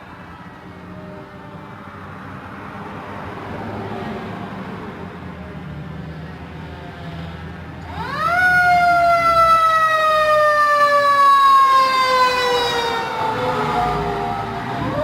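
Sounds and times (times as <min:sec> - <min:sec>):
fire engine siren wailing: 0:07.8 - 0:15.0
vehicle engine rumble: 0:11.4 - 0:15.0.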